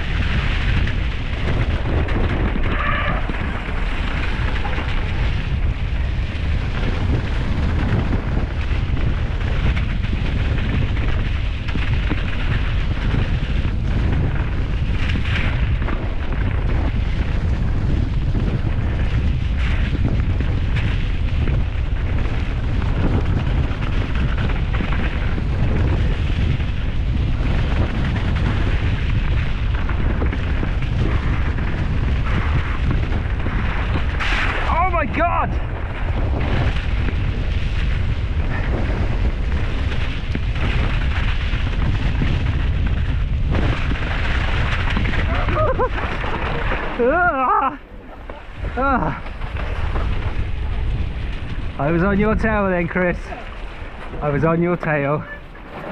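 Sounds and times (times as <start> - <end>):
bike rattling over rough trail: 0.0 - 55.9
wind buffeting microphone: 0.0 - 55.9.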